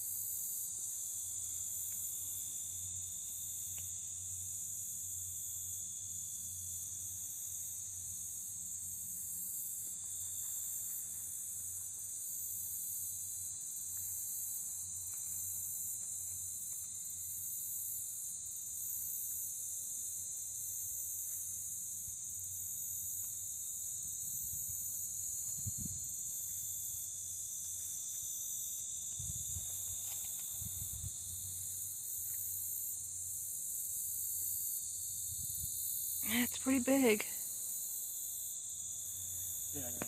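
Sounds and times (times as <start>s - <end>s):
insects chirping: 0.0s - 40.0s.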